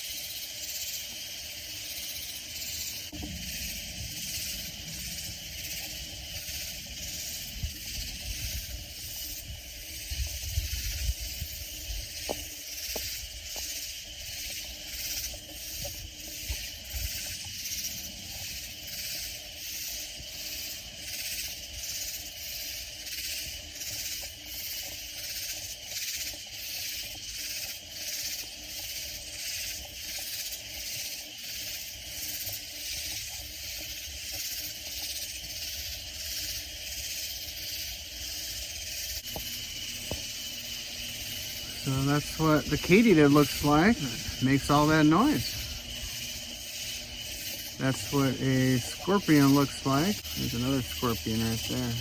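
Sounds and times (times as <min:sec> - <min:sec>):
katydids chorus: 0:00.0 - 0:52.0.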